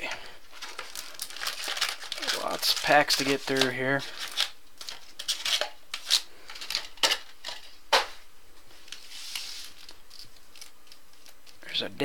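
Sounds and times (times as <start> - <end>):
card wrapper crinkling: 0.4 - 7.7, 8.8 - 11.6.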